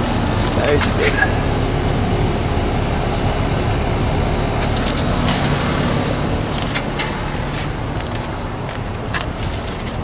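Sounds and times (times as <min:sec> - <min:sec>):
heat pump fan and compressor: 0:00.0 - 0:10.0
low hum: 0:00.0 - 0:10.0.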